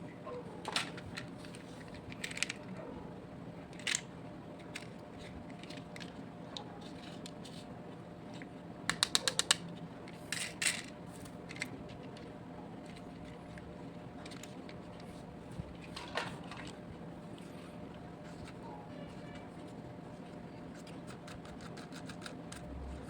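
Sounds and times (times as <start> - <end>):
small toy parts clicking: 8.9 - 9.6, 21.1 - 22.7.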